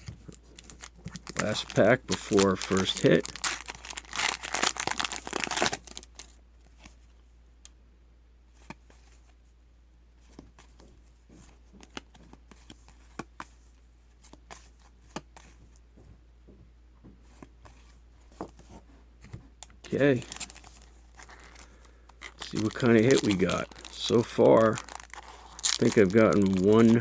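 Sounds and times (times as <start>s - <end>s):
foil wrapper crinkling: 0.3s - 6.4s, 19.8s - 27.0s.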